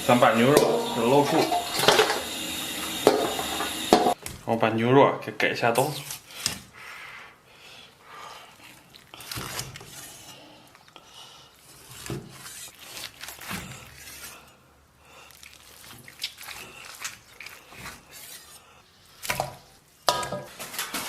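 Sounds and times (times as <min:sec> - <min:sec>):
knife scraping: 0:11.7 - 0:14.5, 0:17.0 - 0:18.6.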